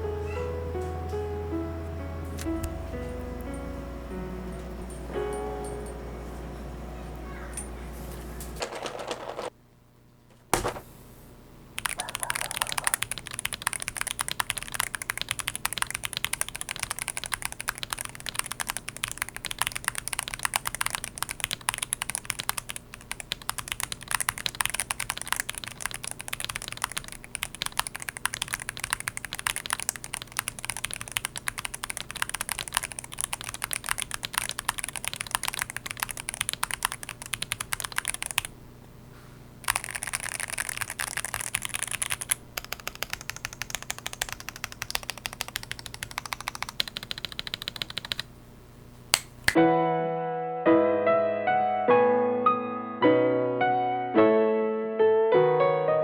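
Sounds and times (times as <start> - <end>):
mechanical keyboard typing: 11.8 - 38.5, 39.6 - 48.3.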